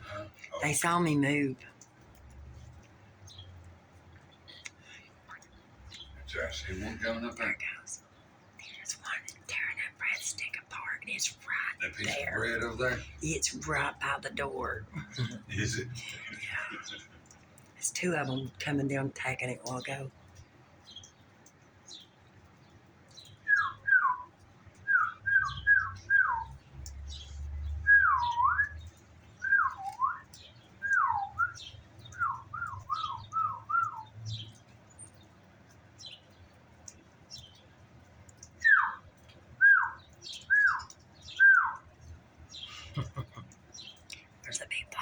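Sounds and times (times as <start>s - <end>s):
faint high bird chirps: 23.1s - 35.3s, 38.4s - 41.9s
bird whistling downslurred notes: 24.9s - 26.5s, 27.8s - 28.8s, 29.4s - 31.6s, 38.6s - 39.0s, 39.6s - 41.8s.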